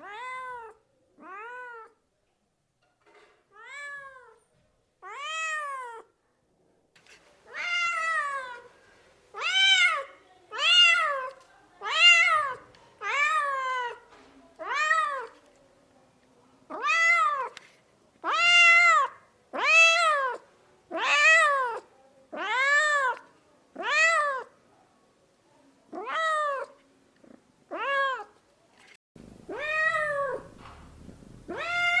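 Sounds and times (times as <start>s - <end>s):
cat meowing: 0.0s - 2.0s, 5.0s - 6.1s, 29.4s - 30.6s, 31.2s - 32.0s
faint background hiss: 28.3s - 32.0s.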